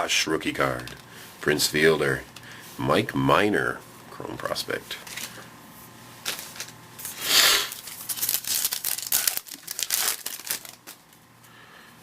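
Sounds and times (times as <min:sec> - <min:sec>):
card pack wrapper ripping: 0:06.2 - 0:11.2
wrapper crinkling: 0:06.2 - 0:11.2.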